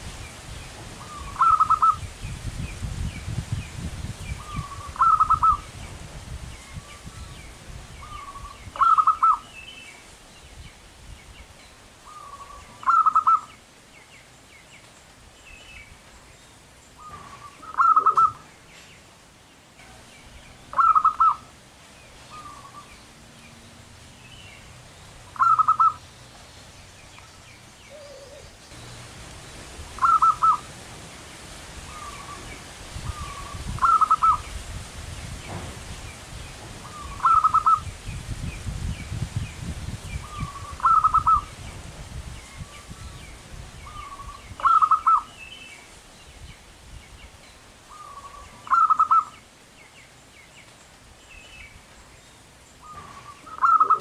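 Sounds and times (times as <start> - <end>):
dove cooing trill: 1.0 - 2.0, 4.4 - 5.7, 8.0 - 9.5, 12.1 - 13.5, 17.0 - 18.5, 20.7 - 21.5, 25.3 - 26.0, 27.9 - 28.6, 30.0 - 30.7, 33.1 - 34.4, 36.8 - 37.9, 40.2 - 41.5, 43.9 - 45.3, 47.9 - 49.3, 52.8 - 54.0.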